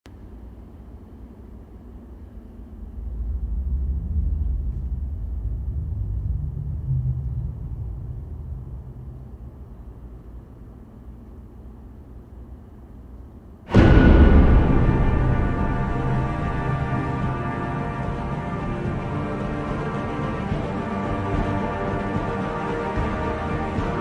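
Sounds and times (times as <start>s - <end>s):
deep low rumble: 2.3s - 10.6s, 13.7s - 21.7s.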